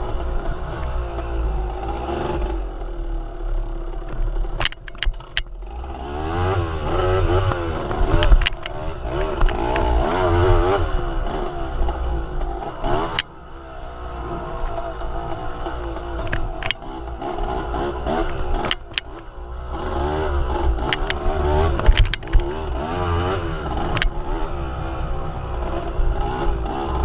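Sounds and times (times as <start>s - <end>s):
road rumble: 0.0s - 27.0s
vehicle engine revving: 0.0s - 27.0s
sharp clatters: 3.9s - 5.6s, 7.3s - 10.0s, 14.6s - 19.3s, 20.5s - 22.8s, 23.6s - 24.3s.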